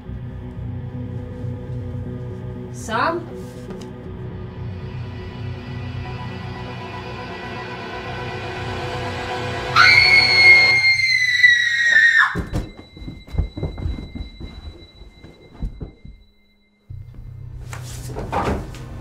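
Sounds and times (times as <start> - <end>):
low musical drone: 0.0 - 10.7
high-pitched shriek: 9.4 - 12.7
thuds and knocks: 12.4 - 16.2.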